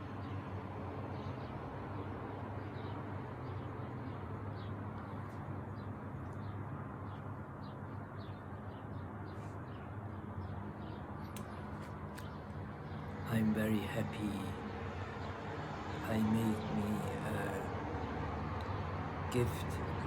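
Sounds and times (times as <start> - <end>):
small birds chirping: 1.0 - 20.0
low background hum: 9.3 - 17.8, 18.6 - 20.0.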